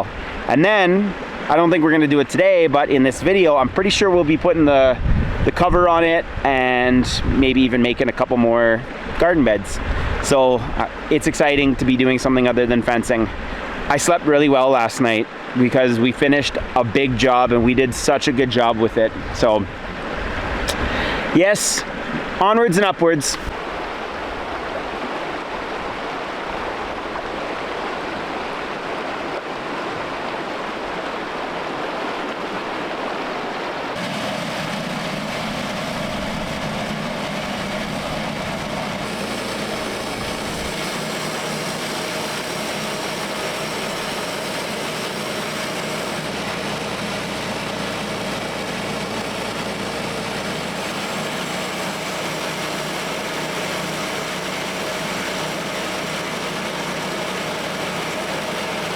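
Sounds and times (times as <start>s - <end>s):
creek water rushing: 0.0s - 58.9s
sawmill engine running: 34.0s - 58.9s.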